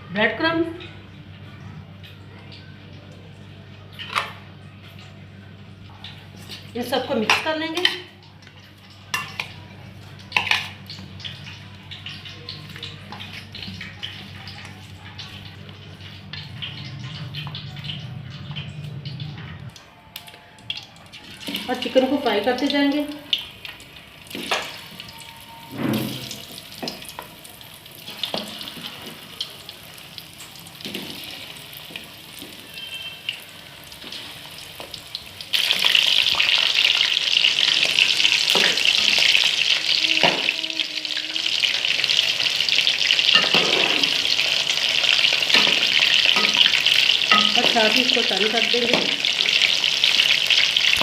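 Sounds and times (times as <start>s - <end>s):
chicken frying in hot oil: 5.9s - 19.4s, 20.6s - 51.0s.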